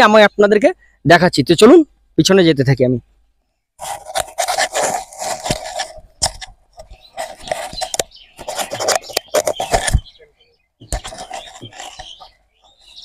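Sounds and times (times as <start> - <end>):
clothing rubbing on microphone: 3.8 - 10.2, 10.8 - 13.0
sharp knocks on microphone: 10.8 - 12.1.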